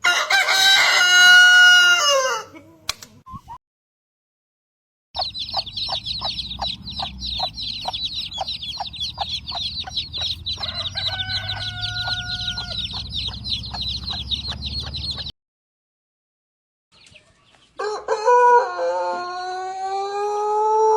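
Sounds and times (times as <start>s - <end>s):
low rumble: 5.2s - 11.0s, 11.9s - 15.3s
chickens calling and clucking: 5.2s - 15.3s, 17.0s - 20.9s.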